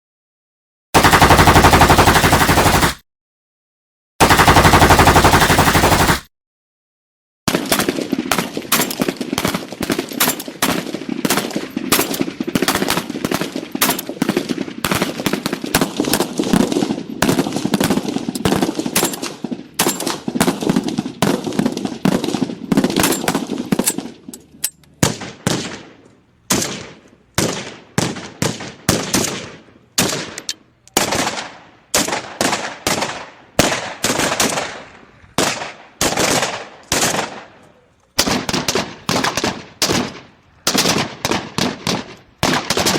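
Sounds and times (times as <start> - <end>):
rifle automatic fire: 1.0 - 3.0, 4.2 - 6.3, 7.5 - 24.3, 31.0 - 37.5, 38.2 - 42.9
single rifle shots echoing: 7.5 - 37.6.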